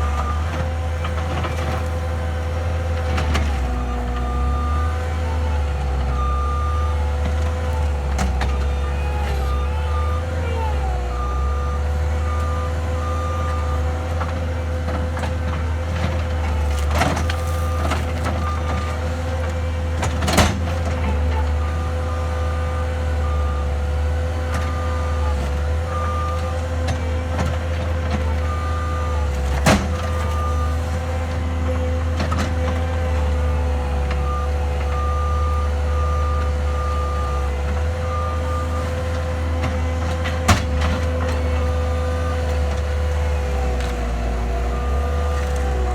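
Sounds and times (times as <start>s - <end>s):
loader engine running: 0.0s - 45.9s
reversing alarm beeping: 3.6s - 14.0s, 21.5s - 26.6s, 28.2s - 31.0s, 33.2s - 39.8s.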